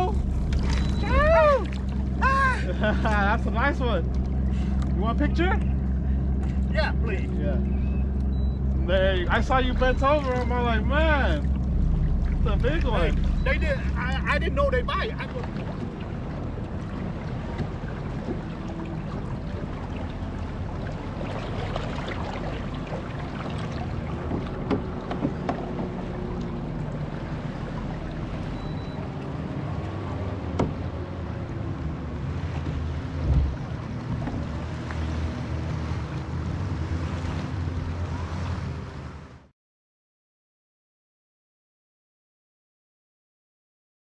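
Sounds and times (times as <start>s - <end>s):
water lapping around kayak: 0.0s - 39.5s
low thump: 30.5s - 30.8s, 32.6s - 33.6s.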